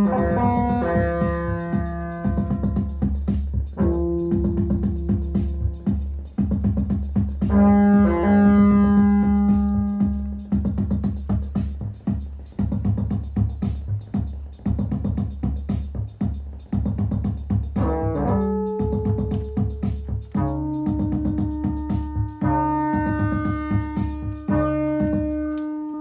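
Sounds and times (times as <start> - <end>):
held synthesizer notes: 0.0 - 2.9, 7.4 - 10.6, 17.8 - 26.0
synthesizer pulsing pattern: 0.0 - 14.4, 17.6 - 26.0.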